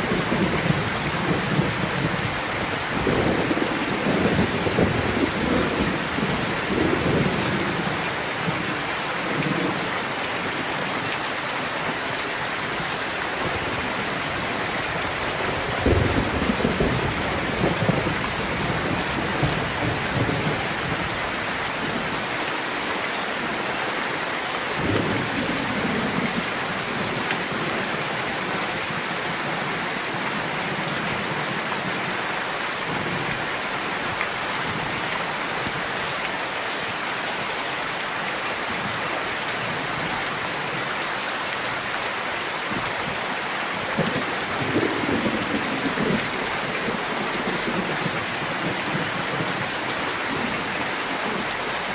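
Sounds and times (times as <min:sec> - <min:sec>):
steady rain: 0:00.0 - 0:51.9
thunder rumbling: 0:13.4 - 0:21.1.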